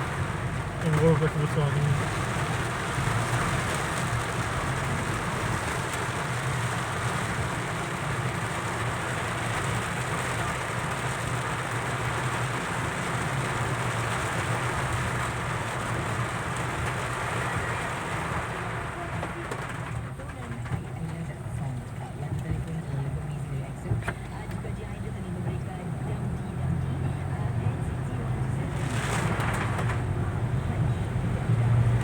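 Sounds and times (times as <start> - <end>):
car low hum: 0.0 - 32.0
heavy rain pelting a car: 0.0 - 32.0.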